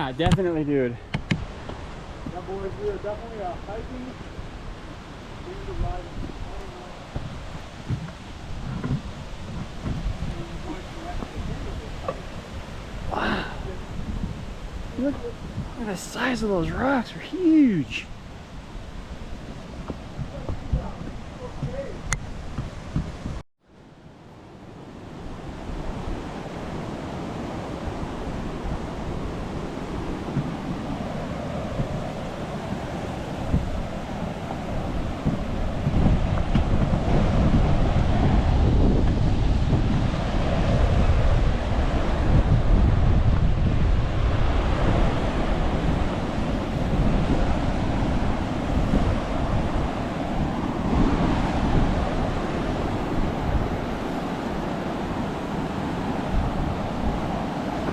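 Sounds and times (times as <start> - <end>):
water rushing: 0.0 - 23.4, 24.1 - 57.9
wind buffeting microphone: 0.0 - 23.4, 24.3 - 57.9
low bumps: 5.5 - 15.8.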